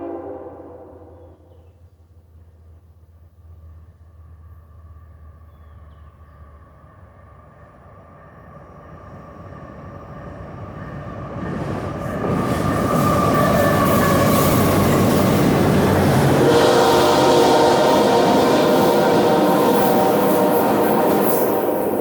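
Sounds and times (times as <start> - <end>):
diesel train approaching: 0.0 - 1.6, 2.5 - 22.0.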